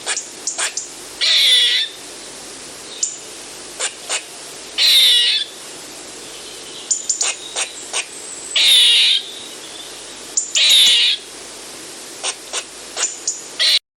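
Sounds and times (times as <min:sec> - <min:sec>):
squirrel raspy calls: 0:00.0 - 0:02.0, 0:03.8 - 0:05.6, 0:06.9 - 0:09.3, 0:10.4 - 0:11.3, 0:12.2 - 0:13.8.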